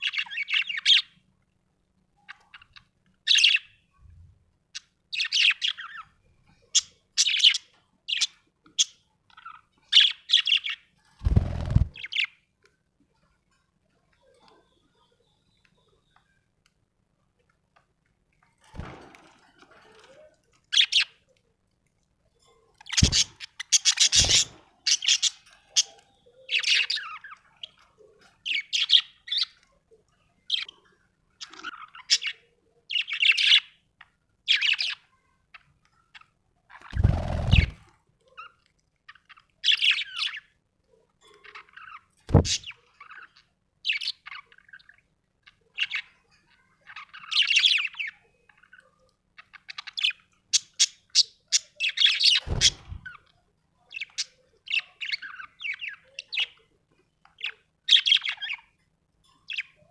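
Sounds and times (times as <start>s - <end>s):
budgerigar chirping and chattering: 6.8s - 10.8s, 22.8s - 27.8s, 46.9s - 53.2s, 57.4s - 58.7s.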